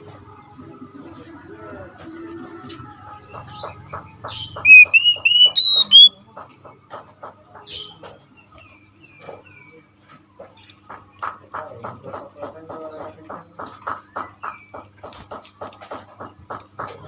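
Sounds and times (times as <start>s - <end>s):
bird whistling song: 4.2s - 6.2s
short clicking notes: 4.6s - 6.1s.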